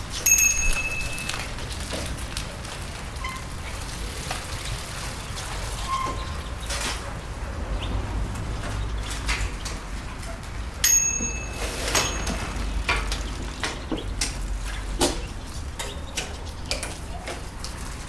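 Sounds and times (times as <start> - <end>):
bicycle clicks and rattles: 0.0 - 7.1, 8.4 - 18.0
bicycle bell ring: 0.2 - 1.4, 10.8 - 12.4.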